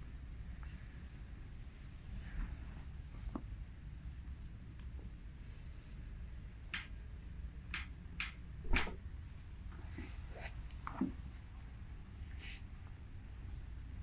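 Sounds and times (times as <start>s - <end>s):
sharp click: 7.7s - 9.0s.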